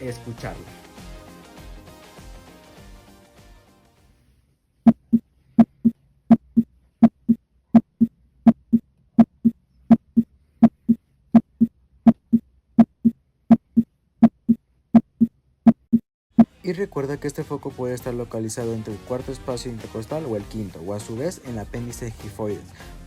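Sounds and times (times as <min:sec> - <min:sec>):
heartbeat lub-dub: 0:04.9 - 0:16.5.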